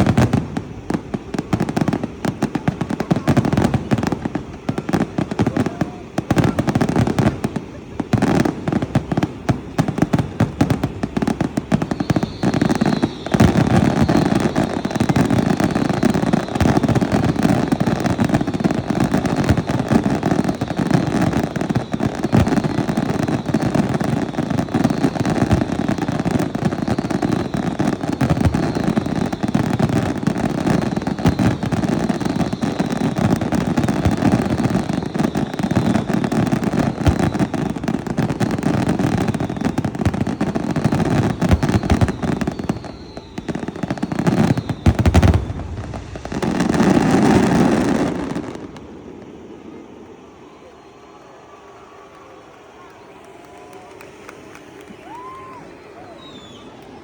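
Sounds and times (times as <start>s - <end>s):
fireworks bangs and crackling: 0.0s - 57.0s.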